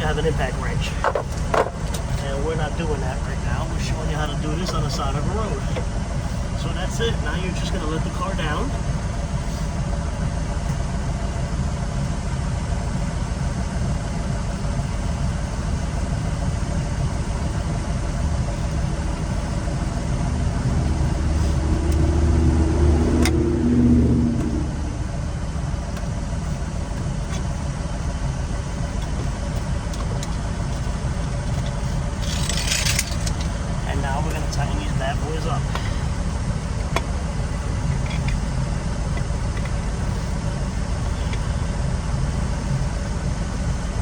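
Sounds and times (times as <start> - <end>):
motor vehicle rumble: 0.0 - 44.0
vehicle passing: 20.1 - 25.4.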